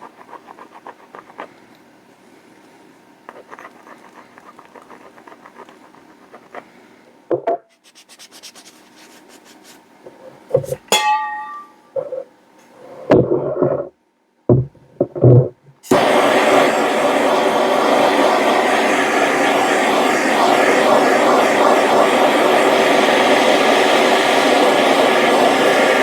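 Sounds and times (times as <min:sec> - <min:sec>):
metallic clink: 0:10.9 - 0:12.0
heavy thumps: 0:14.5 - 0:15.6
knock: 0:14.5 - 0:15.6.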